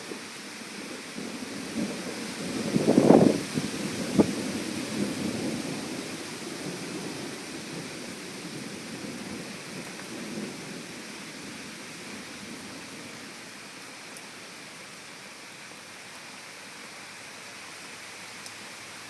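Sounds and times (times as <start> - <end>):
steady rain: 0.0 - 19.0
thunder crack and rumble: 0.8 - 11.6.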